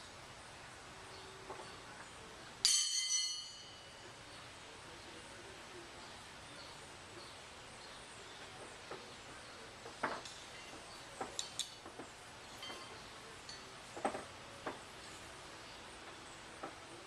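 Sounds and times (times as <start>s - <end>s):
outdoor background hiss: 0.0s - 17.0s.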